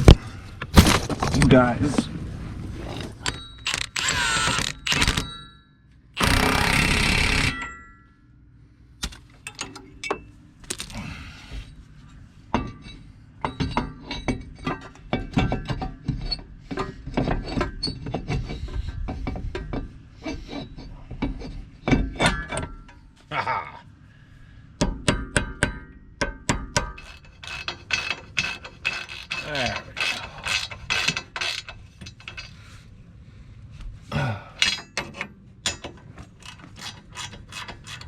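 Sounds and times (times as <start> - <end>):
impact wrench bursts: 3.6 - 5.4, 6.2 - 7.7, 27.0 - 31.7.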